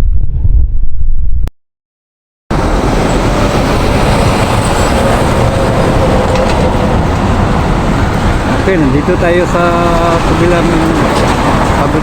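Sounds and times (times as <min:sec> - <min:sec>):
heavy traffic passing: 0:02.5 - 0:12.0.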